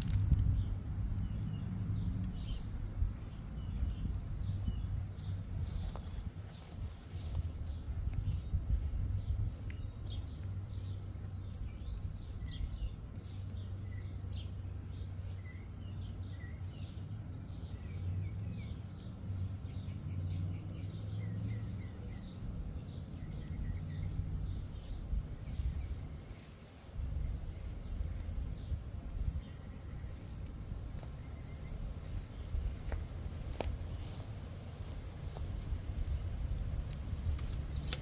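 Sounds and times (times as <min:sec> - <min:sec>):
low steady rumble: 0:00.0 - 0:38.0
small birds chirping: 0:00.0 - 0:38.0.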